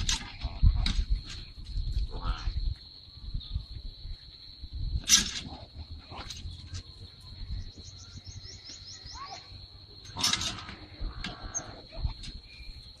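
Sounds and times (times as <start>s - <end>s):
high insect drone: 0.0s - 13.0s
small birds chirping: 5.5s - 13.0s.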